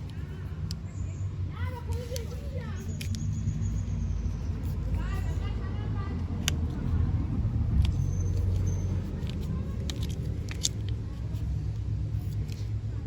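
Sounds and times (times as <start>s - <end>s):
steady low rumble: 2.6s - 13.0s.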